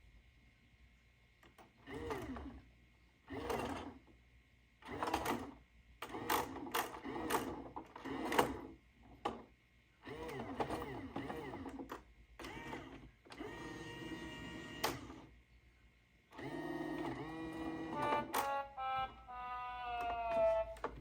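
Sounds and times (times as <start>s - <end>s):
toy crane motors whirring: 10.0s - 15.2s, 16.4s - 18.6s.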